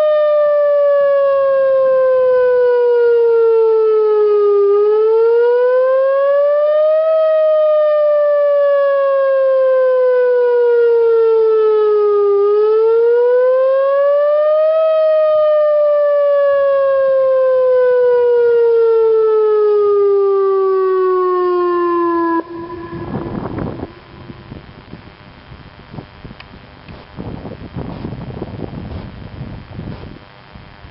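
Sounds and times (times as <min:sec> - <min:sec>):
warning siren wailing: 0:00.0 - 0:25.3
rough rush of noise: 0:22.2 - 0:27.8.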